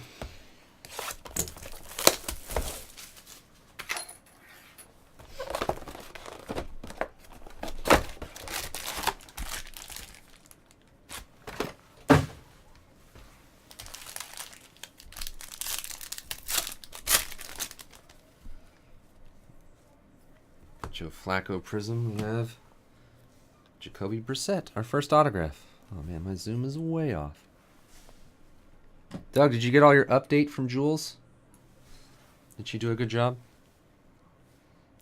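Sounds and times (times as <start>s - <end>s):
wrapping tearing and crinkling: 0.9s - 3.5s, 5.3s - 11.3s, 13.7s - 18.3s.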